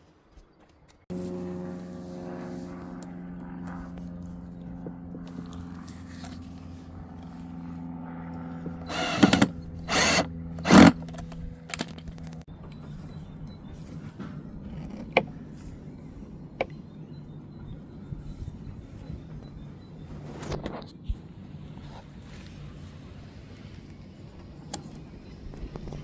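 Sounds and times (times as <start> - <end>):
electric motor humming: 1.1 - 3.6, 8.8 - 12.1
short rushing blasts: 8.9 - 11.0.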